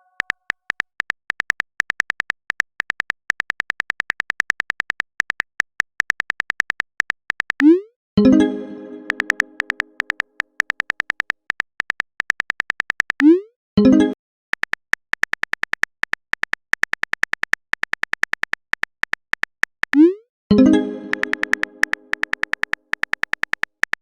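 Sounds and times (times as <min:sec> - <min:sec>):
phone keyboard clicks: 0:00.0 - 0:07.7, 0:08.9 - 0:13.3, 0:14.6 - 0:20.0, 0:21.0 - 0:24.0
bright chime: 0:08.2 - 0:09.5.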